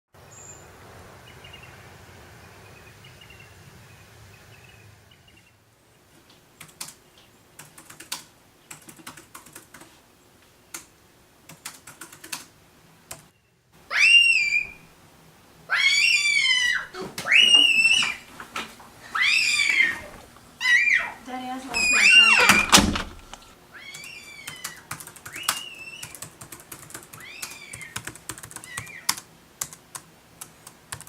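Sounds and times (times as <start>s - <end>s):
keyboard typing clicks: 6.6s - 9.9s, 11.5s - 12.5s, 13.1s - 13.3s, 23.0s - 31.0s
high-pitched rising cry: 13.9s - 14.9s, 15.7s - 18.2s, 19.0s - 21.2s, 21.8s - 22.8s.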